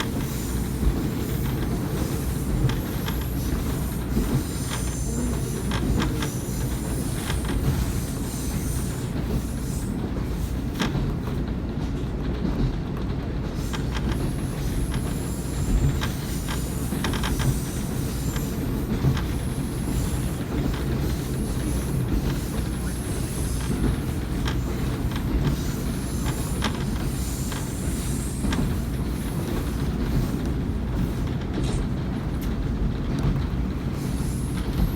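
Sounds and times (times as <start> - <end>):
wheels clicking over rail joints: 0.0 - 9.5, 10.7 - 34.9
diesel railcar rumble: 0.0 - 34.9
high wheel squeal: 13.8 - 29.6.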